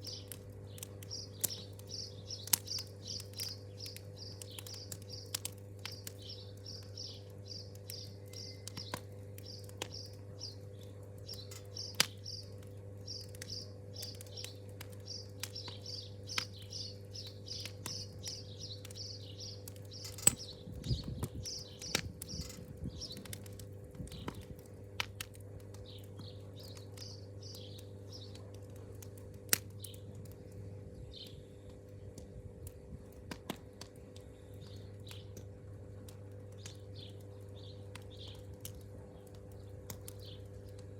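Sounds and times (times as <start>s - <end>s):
small bird chirping: 0.0s - 23.5s, 25.7s - 28.4s, 39.2s - 40.6s
campfire crackling and popping: 0.0s - 40.9s
steady low hum: 0.0s - 40.9s.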